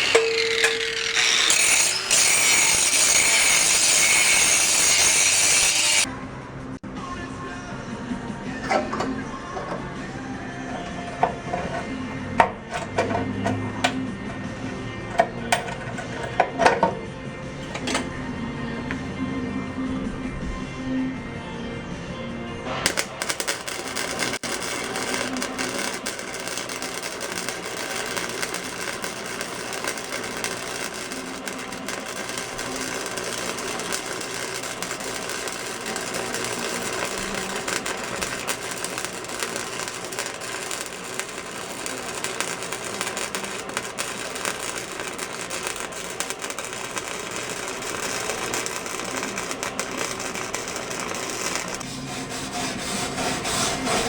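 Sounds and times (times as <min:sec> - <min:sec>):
welder arc crackling: 0:00.0 - 0:06.1, 0:22.8 - 0:51.9.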